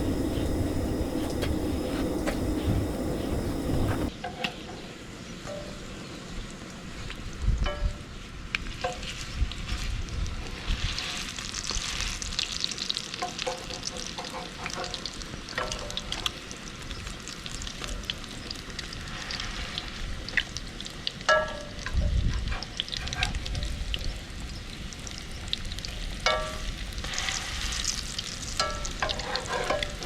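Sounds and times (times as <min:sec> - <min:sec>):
patties sizzling in hot oil: 0:08.7 - 0:30.0.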